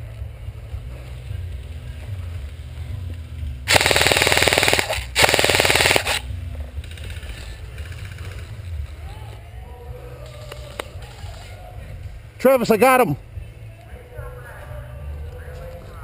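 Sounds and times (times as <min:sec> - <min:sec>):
airsoft gun firing full auto: 0:03.7 - 0:06.3.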